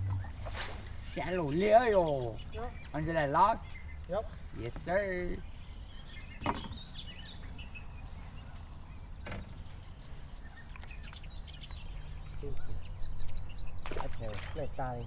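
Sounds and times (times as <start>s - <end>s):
birds chirping: 0.0s - 15.0s.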